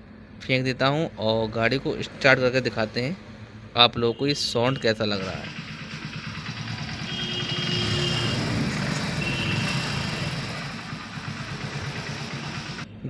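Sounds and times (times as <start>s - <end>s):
motorcycle engine running: 5.0s - 12.9s.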